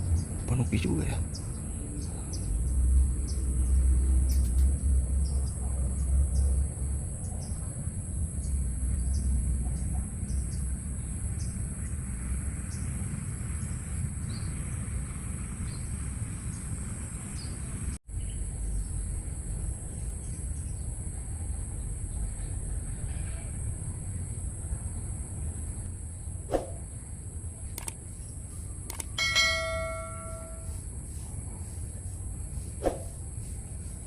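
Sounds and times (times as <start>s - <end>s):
insects droning: 0.0s - 34.0s
low rumble: 1.2s - 27.8s
short insect chirps: 27.7s - 34.0s.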